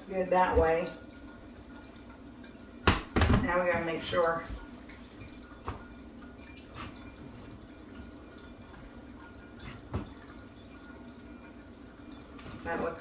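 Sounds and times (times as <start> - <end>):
faint room hum: 0.0 - 13.0.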